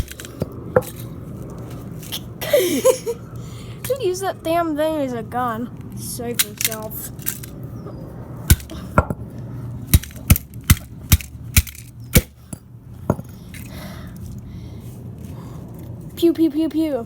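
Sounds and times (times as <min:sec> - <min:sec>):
plastic toy gun being struck: 0:00.0 - 0:00.9, 0:08.5 - 0:08.7, 0:09.9 - 0:12.4.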